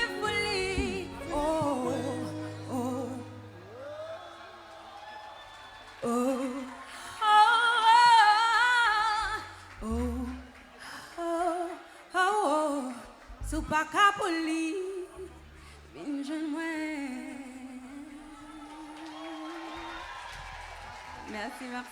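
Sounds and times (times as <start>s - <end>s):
deep bass notes: 0.0s - 4.2s, 9.8s - 10.5s, 13.3s - 13.8s
person singing with vibrato: 0.0s - 4.5s.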